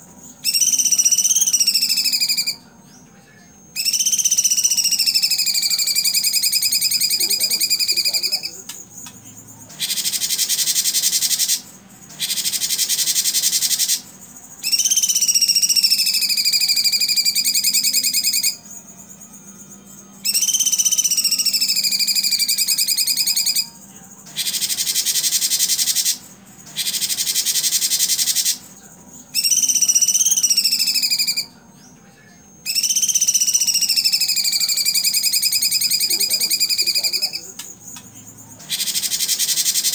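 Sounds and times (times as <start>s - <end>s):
songbird whistled trills: 0.2s - 39.9s
bird harsh buzzing bursts: 9.6s - 19.7s, 24.3s - 28.7s, 32.7s - 39.9s.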